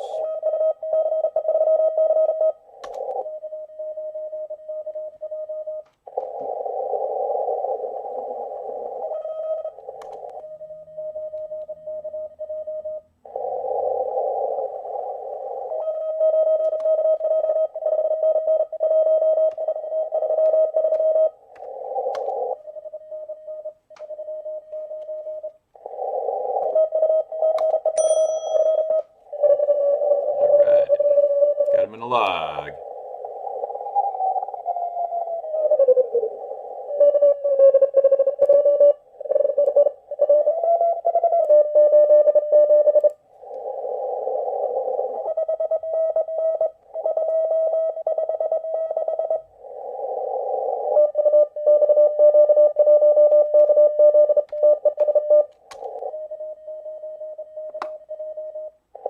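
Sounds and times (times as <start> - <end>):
hissy radio band noise: 0.0 - 1.9, 29.4 - 59.0
morse code keyed tone: 28.0 - 29.0.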